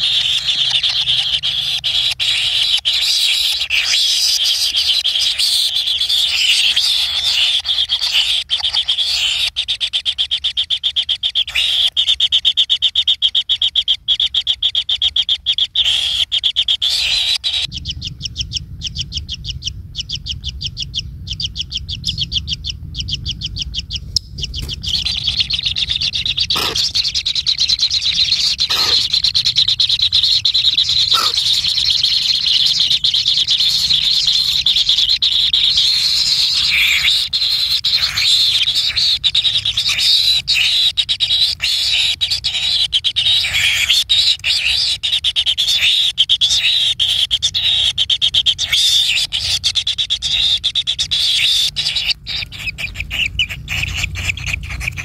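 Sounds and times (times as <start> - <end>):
bird rasping chatter: 0.0 - 55.0
short low bird calls: 0.0 - 55.0.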